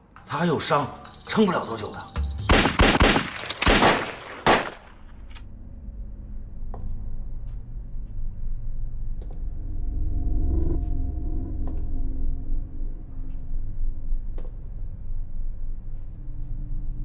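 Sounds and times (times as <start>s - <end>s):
gunshots ringing out: 2.5s - 5.2s
low steady rumble: 4.8s - 17.0s.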